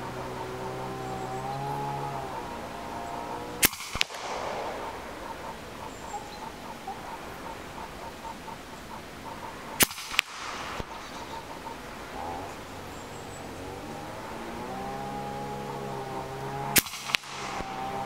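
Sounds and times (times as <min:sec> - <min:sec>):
faint crack: 0:01.7 - 0:07.3
air rifle shot crack: 0:01.8 - 0:07.9, 0:09.4 - 0:12.4, 0:14.0 - 0:18.0.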